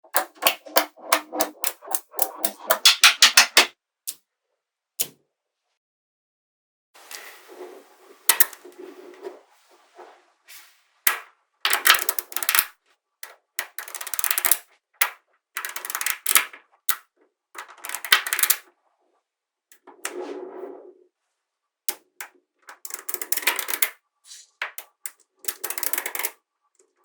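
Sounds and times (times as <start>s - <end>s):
magnetic balls clicking together: 0.1s - 4.2s, 11.1s - 18.6s, 21.9s - 24.0s, 24.6s - 26.4s.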